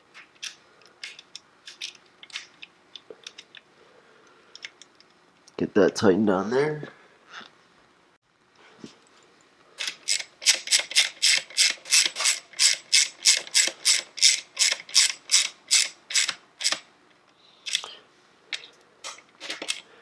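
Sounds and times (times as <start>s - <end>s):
ratchet wrench clicking: 9.8s - 16.8s.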